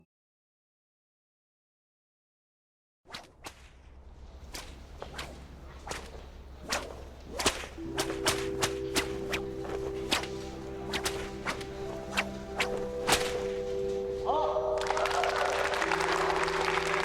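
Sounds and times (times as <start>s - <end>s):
sharp whip-like cracks: 3.1s - 13.9s
held musical chord: 7.8s - 17.0s
low steady drone: 7.8s - 17.0s.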